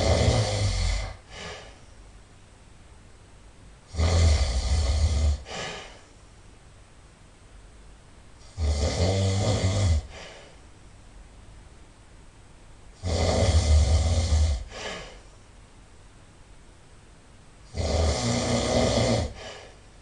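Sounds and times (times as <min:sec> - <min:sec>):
person snoring loudly: 0:00.0 - 0:01.7, 0:03.9 - 0:06.0, 0:08.4 - 0:10.4, 0:13.0 - 0:15.2, 0:17.7 - 0:19.8
soft breath: 0:00.0 - 0:02.1, 0:04.5 - 0:06.3, 0:10.0 - 0:10.7, 0:14.4 - 0:15.6, 0:19.2 - 0:20.0.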